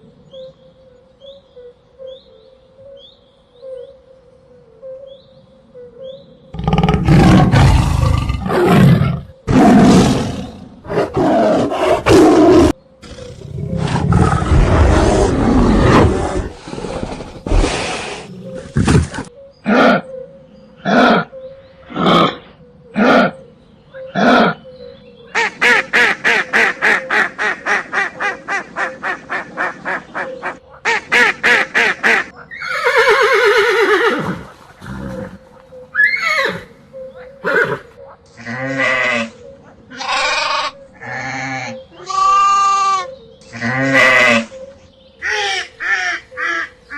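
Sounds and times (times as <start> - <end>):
animal roaring: 6.6 - 18.8
animal grunting: 6.6 - 20.1, 20.8 - 23.4.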